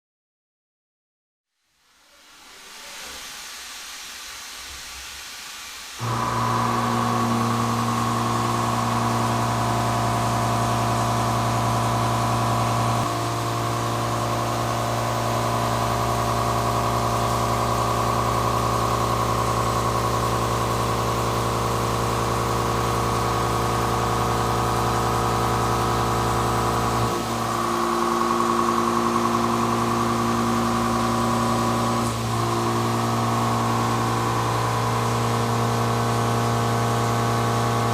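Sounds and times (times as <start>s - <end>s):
soft hiss: 1.6s - 6.0s
machine hum with held tones: 6.0s - 37.9s.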